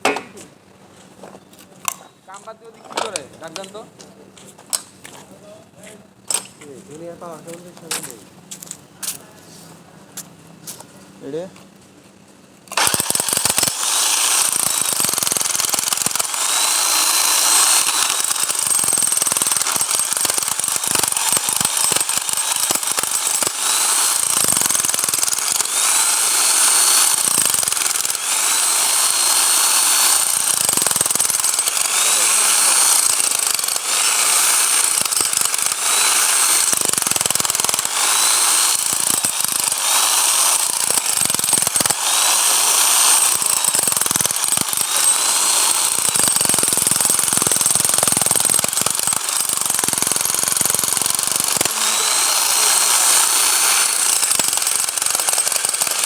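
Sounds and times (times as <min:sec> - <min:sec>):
hammer drill hammering: 0:12.7 - 0:56.0.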